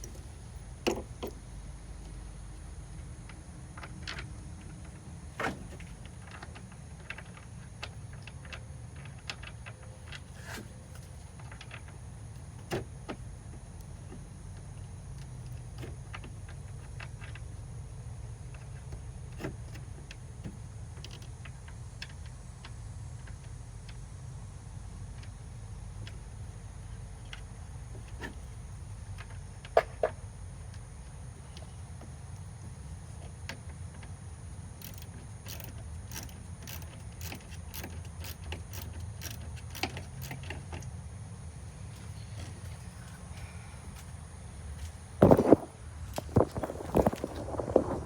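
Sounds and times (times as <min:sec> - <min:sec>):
low steady hum: 0:00.0 - 0:15.6.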